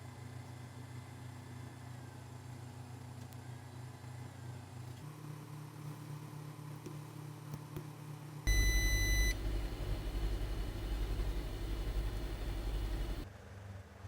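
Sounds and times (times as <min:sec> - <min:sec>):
short electronic beep: 0:08.5 - 0:09.4
loud low hum: 0:08.5 - 0:13.3
machine hum: 0:08.5 - 0:13.3.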